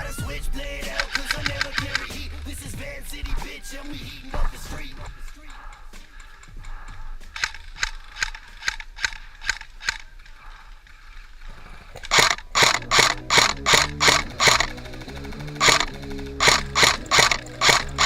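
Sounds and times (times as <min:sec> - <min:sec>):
stepping bass line: 0:00.0 - 0:05.5, 0:12.3 - 0:18.0
ticking clicking percussion: 0:00.0 - 0:10.6, 0:12.0 - 0:18.0.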